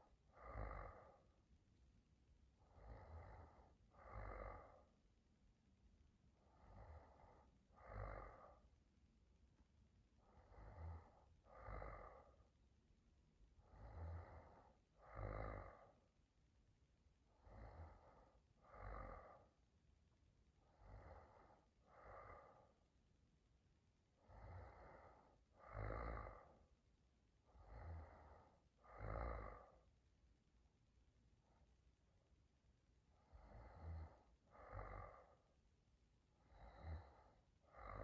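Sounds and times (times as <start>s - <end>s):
woman snoring softly: 0.0s - 1.4s, 2.6s - 5.0s, 6.4s - 8.7s, 10.3s - 12.5s, 13.6s - 16.1s, 17.3s - 19.6s, 20.6s - 22.8s, 24.2s - 26.7s, 27.4s - 29.9s, 33.1s - 35.6s, 36.3s - 38.0s.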